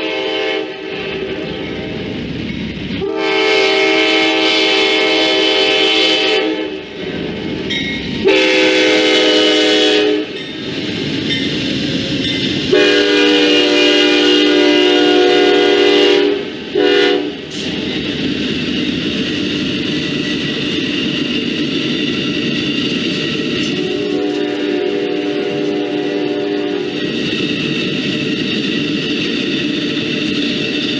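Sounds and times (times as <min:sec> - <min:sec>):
train air horn blasts: 0:00.0 - 0:01.4, 0:03.0 - 0:06.8, 0:08.2 - 0:10.4, 0:12.7 - 0:17.4, 0:23.7 - 0:27.0
passing train rumble: 0:00.0 - 0:30.9.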